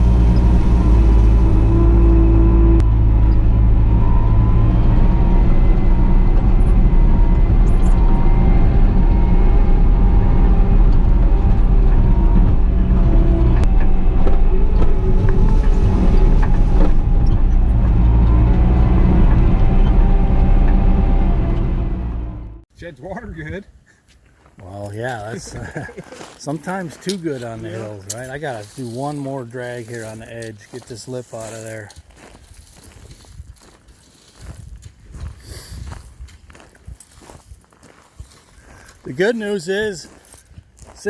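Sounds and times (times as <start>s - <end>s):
diesel engine running: 0.0s - 22.7s.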